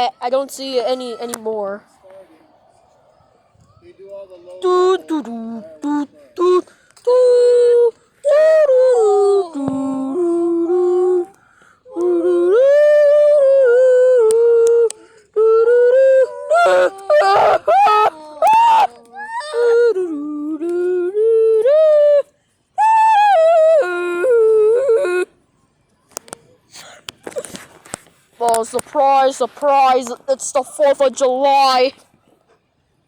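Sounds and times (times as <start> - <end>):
child humming and singing: 4.6 - 25.3.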